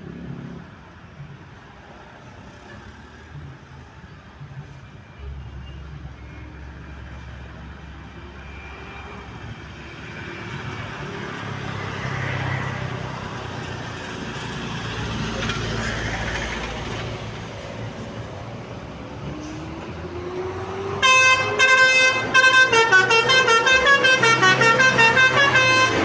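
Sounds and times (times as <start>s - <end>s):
road traffic engine hum: 0.0s - 26.0s
vehicle approaching: 6.5s - 26.0s.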